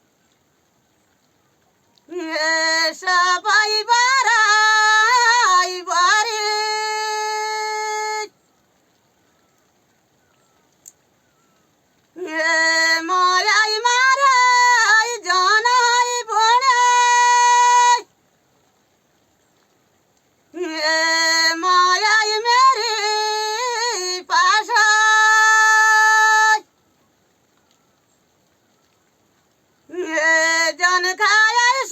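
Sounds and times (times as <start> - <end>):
person singing unaccompanied: 2.0 - 8.4, 12.1 - 18.1, 20.5 - 26.7, 29.9 - 31.9.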